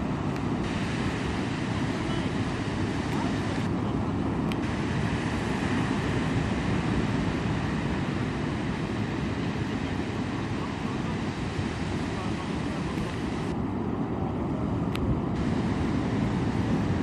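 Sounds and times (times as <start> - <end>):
surf washing on shore: 0.0 - 17.0
wind buffeting microphone: 0.0 - 17.0.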